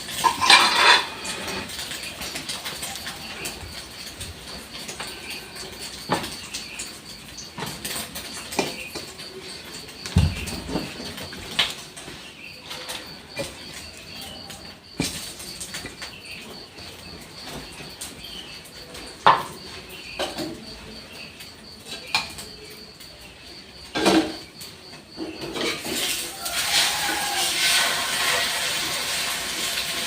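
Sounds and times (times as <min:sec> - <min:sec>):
utensils and dishes clinking: 0:00.0 - 0:29.9.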